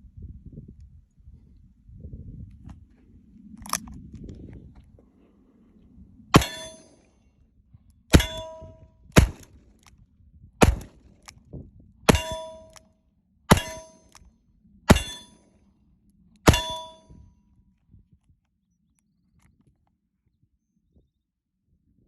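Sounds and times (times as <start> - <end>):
ringing metallic clang: 6.4 - 7.0, 8.1 - 8.9, 12.1 - 12.8, 13.5 - 14.2, 14.9 - 15.4, 16.5 - 17.2.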